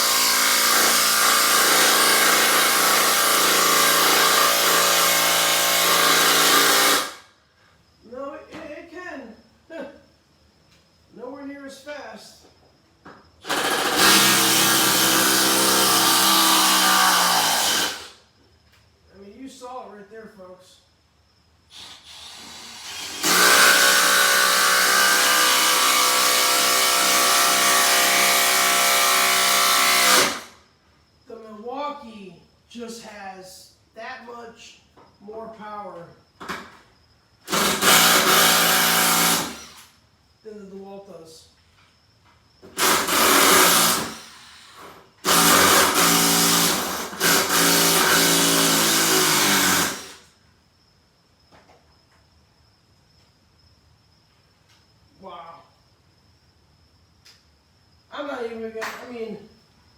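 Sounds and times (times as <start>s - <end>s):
impact driver hammering screw: 22.9s - 30.5s, 37.5s - 39.9s, 42.8s - 44.2s, 45.2s - 50.2s.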